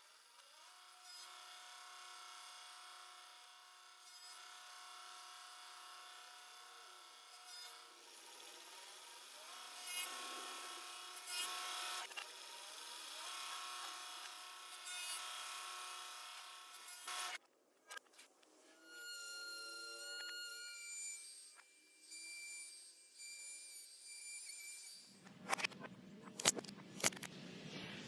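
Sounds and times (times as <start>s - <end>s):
reversed power tool motor whine: 18.7s - 25.2s
reversed clicks and scrapes: 25.2s - 28.0s.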